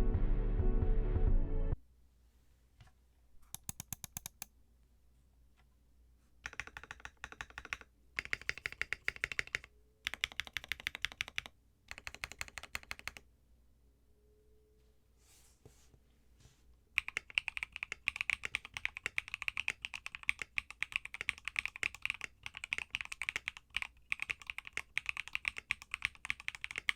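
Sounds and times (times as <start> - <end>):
mechanical keyboard typing: 3.5 - 4.5, 6.4 - 13.2, 17.0 - 26.9.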